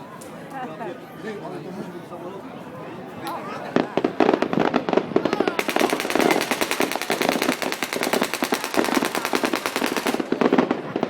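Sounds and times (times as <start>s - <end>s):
fireworks crackling: 3.6s - 11.0s.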